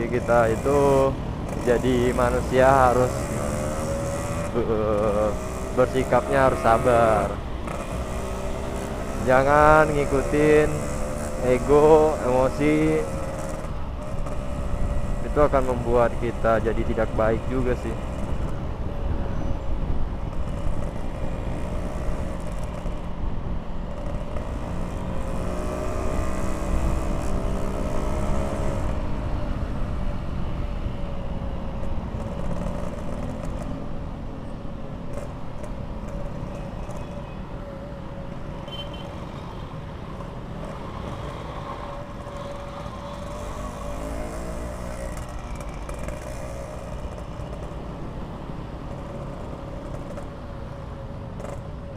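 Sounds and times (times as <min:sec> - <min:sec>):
wind and road noise: 0:00.0 - 0:51.9
two-stroke motorcycle engine: 0:42.0 - 0:51.8.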